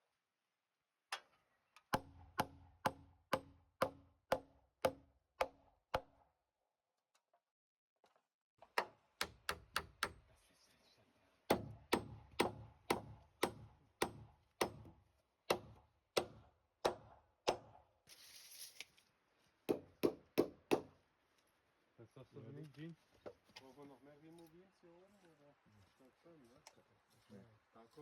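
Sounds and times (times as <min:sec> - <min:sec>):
hammer driving nails into timber: 0:01.9 - 0:06.1, 0:08.7 - 0:10.2, 0:11.5 - 0:17.8, 0:19.7 - 0:20.9.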